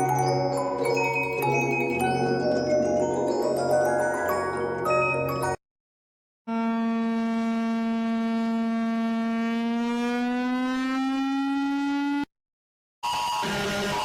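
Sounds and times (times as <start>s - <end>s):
siren rising in pitch: 6.5s - 12.3s, 13.0s - 14.0s.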